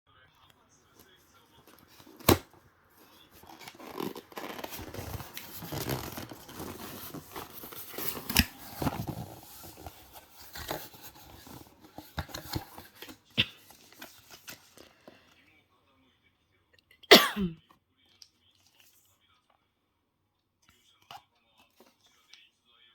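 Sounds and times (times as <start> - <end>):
packaging rustling and tearing: 1.0 - 15.0.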